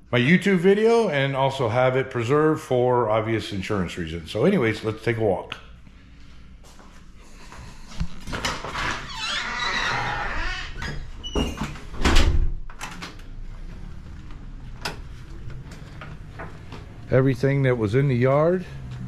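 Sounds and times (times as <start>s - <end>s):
door squeaky scraping: 8.6s - 12.2s
door handling clicks and knocks: 10.8s - 13.3s.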